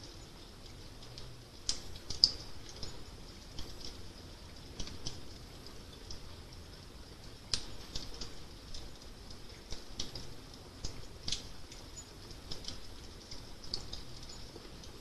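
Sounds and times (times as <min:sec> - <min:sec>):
fire crackling and popping: 0:00.0 - 0:15.0
low steady rumble: 0:00.0 - 0:15.0.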